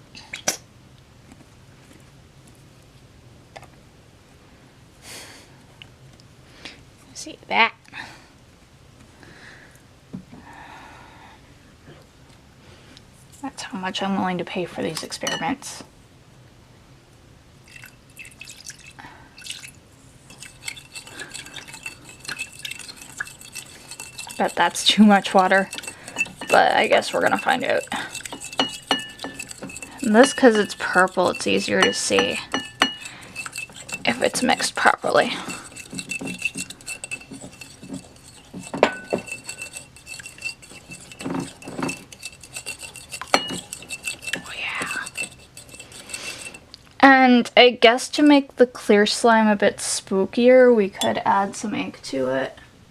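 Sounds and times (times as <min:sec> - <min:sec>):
water dripping into container: 0:17.6 - 0:19.8
utensil stirring and scraping container: 0:17.8 - 0:46.8.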